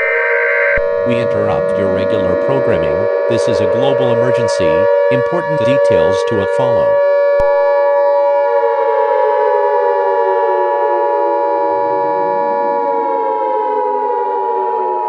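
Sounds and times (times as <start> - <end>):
two-tone attention signal: 0.0 - 7.8
siren-like falling tone: 0.0 - 15.0.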